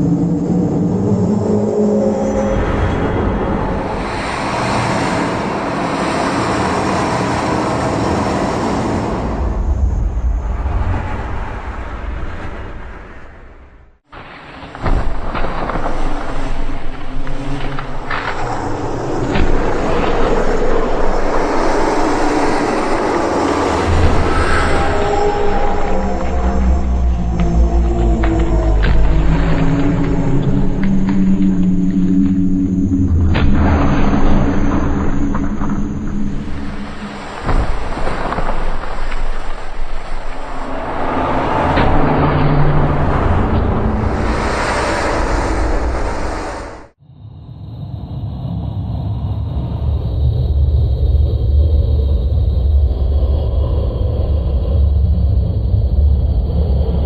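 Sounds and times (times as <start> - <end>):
low droning groan: 0.0 - 12.9, 14.9 - 47.0
rough creature rumble: 0.0 - 13.4, 15.0 - 46.9
sharp crackles: 14.1 - 22.4, 24.4 - 41.2.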